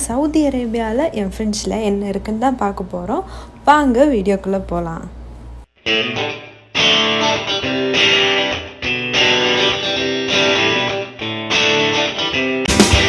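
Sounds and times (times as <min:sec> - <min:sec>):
guitar playing held chords: 0:05.8 - 0:13.0.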